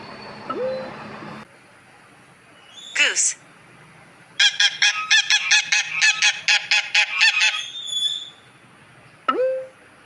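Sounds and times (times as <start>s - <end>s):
goose honking: 4.4s - 7.7s.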